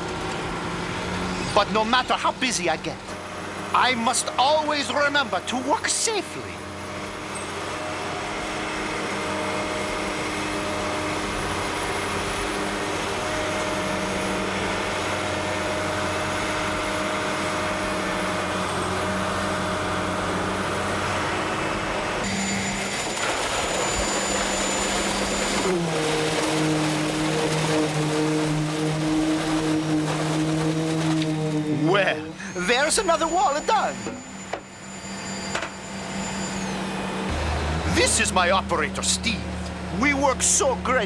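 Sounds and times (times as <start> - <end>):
construction machinery engine humming: 0.0 - 41.0.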